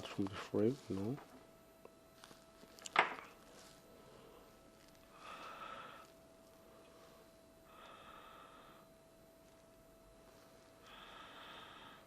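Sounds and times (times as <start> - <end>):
faint steady tone: 0.0 - 12.0
person breathing softly: 3.5 - 9.0, 10.2 - 12.0.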